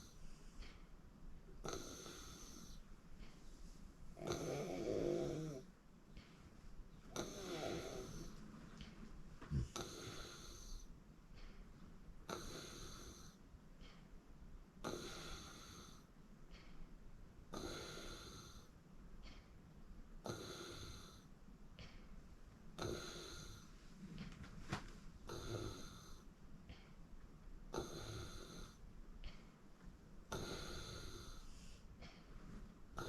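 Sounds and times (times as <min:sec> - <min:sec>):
person snoring: 0:01.6 - 0:02.8, 0:04.2 - 0:05.7, 0:07.2 - 0:08.3, 0:22.8 - 0:23.6, 0:25.3 - 0:26.2, 0:27.7 - 0:28.8, 0:30.3 - 0:31.6.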